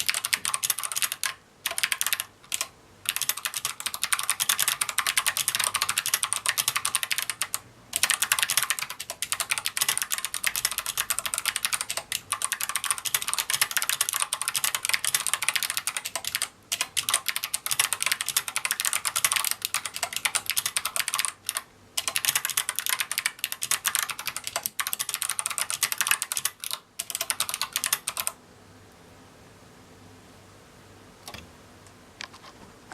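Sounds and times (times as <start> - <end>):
fast typing on clicky keyboard: 0.0 - 28.4.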